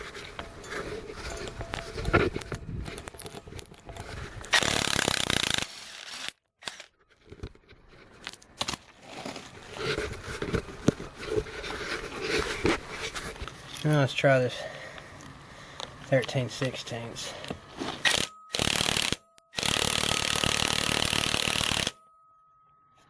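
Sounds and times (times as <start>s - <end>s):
tools and metal parts clanking: 0.0s - 4.5s
impact wrench hammering: 18.1s - 22.0s.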